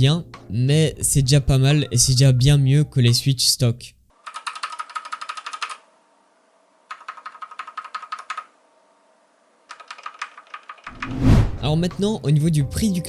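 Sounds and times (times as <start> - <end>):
mechanical keyboard typing: 4.2 - 5.8, 6.9 - 8.5, 9.7 - 11.0.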